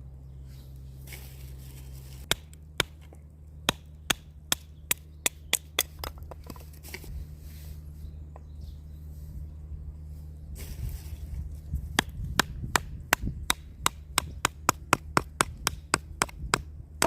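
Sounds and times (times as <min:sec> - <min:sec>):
firewood being chopped: 0:02.2 - 0:07.0, 0:11.9 - 0:17.0.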